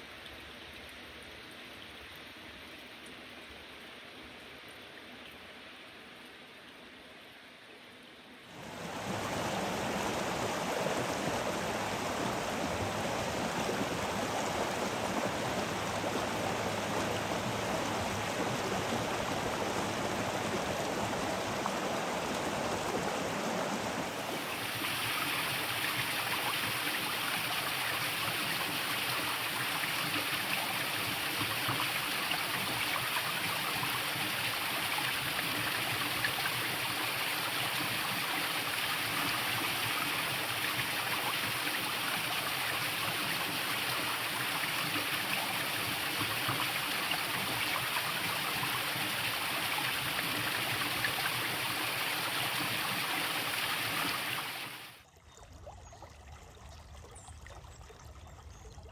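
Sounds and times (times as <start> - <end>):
stream water rushing: 8.5 - 55.0.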